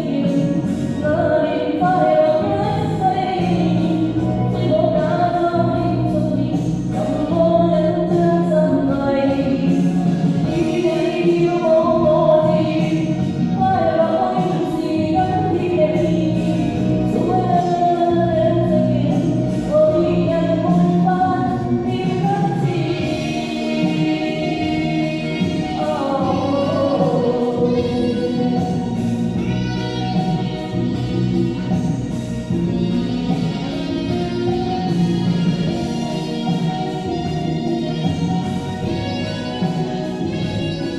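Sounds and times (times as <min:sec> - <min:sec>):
person singing with echo: 0:00.0 - 0:29.5
pop ballad backing track: 0:00.0 - 0:40.9.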